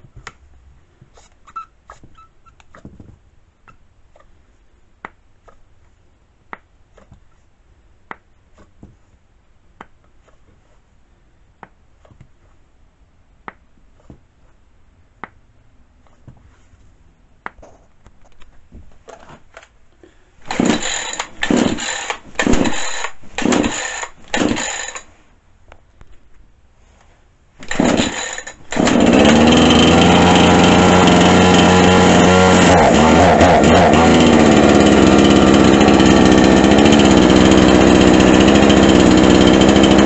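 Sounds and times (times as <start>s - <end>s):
chainsaw pull-start cranking: 20.4s - 25.1s, 27.6s - 40.0s.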